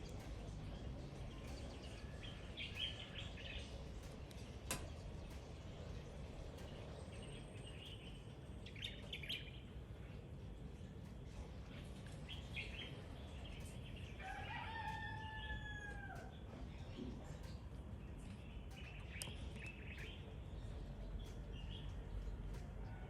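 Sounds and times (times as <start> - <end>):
small birds chirping: 0.0 - 23.0
rooster crowing: 14.2 - 16.4.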